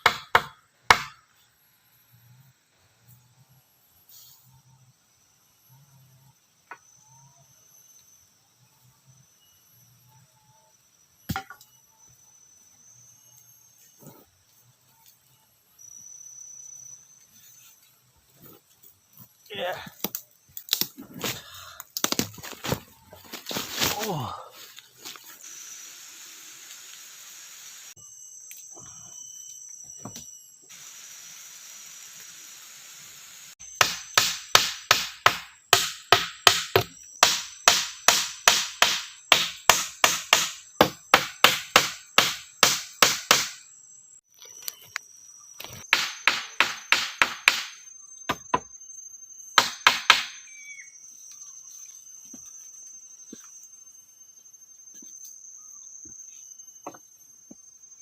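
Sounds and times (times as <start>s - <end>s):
tool striking wood: 0.0s - 1.2s, 11.3s - 11.6s, 33.7s - 43.6s, 45.9s - 48.7s, 49.6s - 50.4s
insects trilling: 0.0s - 58.0s.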